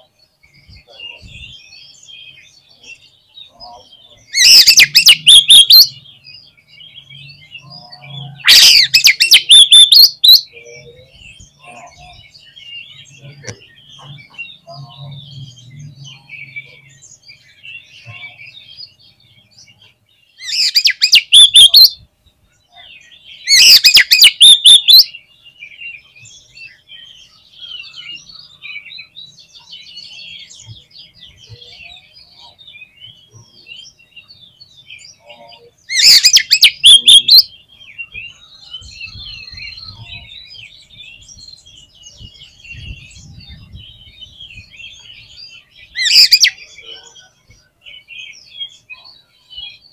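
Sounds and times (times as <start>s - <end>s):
loud harsh bird notes: 0.0s - 49.9s
bird chirping and whistling: 4.2s - 6.0s, 6.8s - 12.3s, 20.4s - 22.0s, 23.4s - 25.2s, 35.9s - 41.0s, 42.1s - 46.8s.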